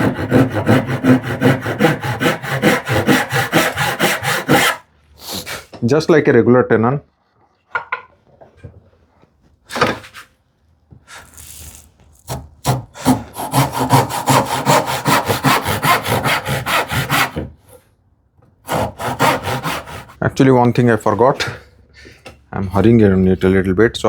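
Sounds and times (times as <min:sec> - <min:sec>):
hand saw cutting wood: 0:00.0 - 0:04.9, 0:11.4 - 0:17.5, 0:18.6 - 0:20.2
short scrape: 0:11.1 - 0:12.0.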